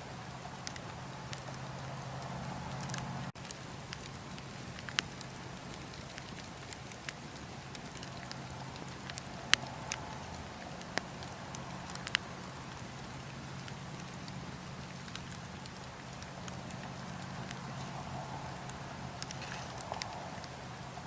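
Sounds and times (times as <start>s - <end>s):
bonfire crackling: 0.0s - 21.0s
low hiss of burning: 0.0s - 21.0s.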